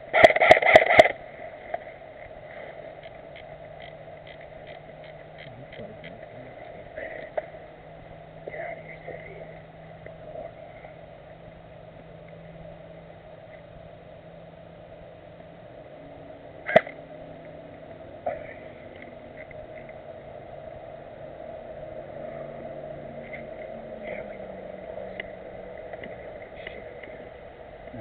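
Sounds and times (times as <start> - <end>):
steady background hiss: 0.0 - 28.0.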